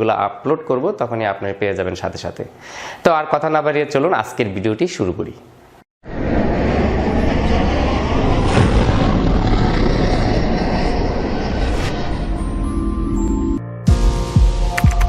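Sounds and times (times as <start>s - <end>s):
loud steady rumbling: 6.1s - 12.5s.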